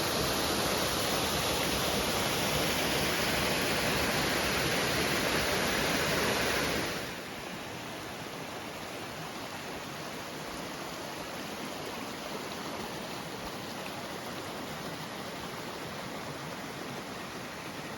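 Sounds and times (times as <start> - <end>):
waterfall rushing: 0.0 - 13.5.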